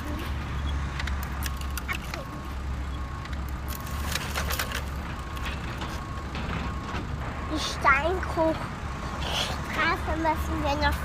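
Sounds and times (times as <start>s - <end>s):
plastic toy vehicles rattling: 1.0s - 2.5s, 3.2s - 6.9s.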